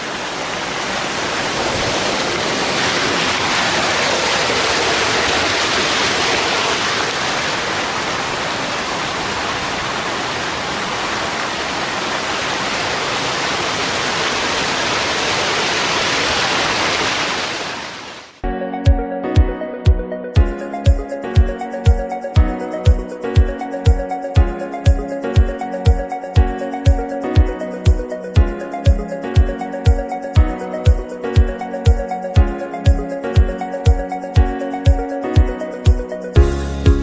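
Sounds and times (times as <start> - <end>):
waterfall rushing: 0.0 - 18.4
music: 18.4 - 37.0.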